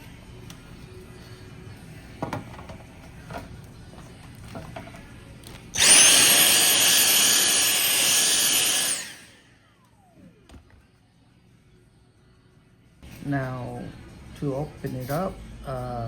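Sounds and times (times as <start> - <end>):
power tool motor whine: 5.7 - 9.5.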